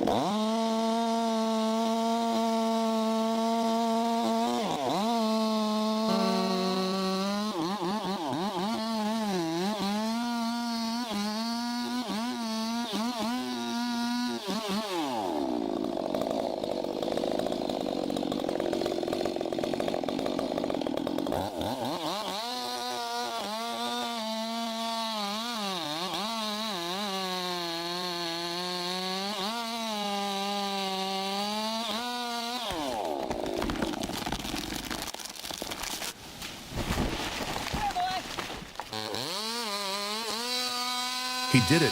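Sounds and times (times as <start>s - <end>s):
chainsaw cutting: 0.0s - 41.9s
sharp cracking noises: 32.7s - 39.2s.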